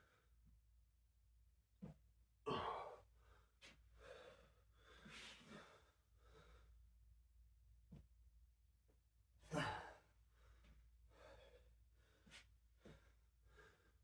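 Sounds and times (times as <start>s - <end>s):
man breathing with effort: 9.6s - 14.0s.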